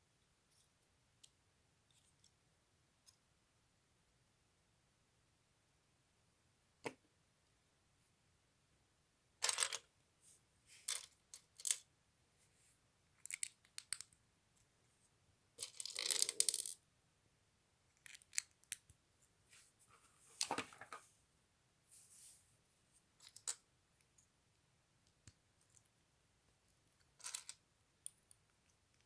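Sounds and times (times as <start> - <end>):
plastic pieces clicking and clattering: 9.4 - 9.9, 15.6 - 16.8, 27.2 - 28.2.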